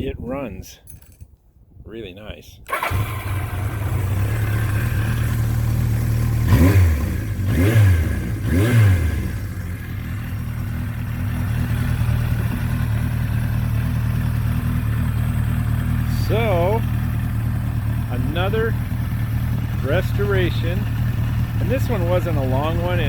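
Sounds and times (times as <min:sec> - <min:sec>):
motorcycle engine idling and revving: 0:02.7 - 0:23.0
person speaking: 0:16.1 - 0:16.9, 0:18.1 - 0:18.8, 0:19.8 - 0:20.9, 0:21.6 - 0:23.0.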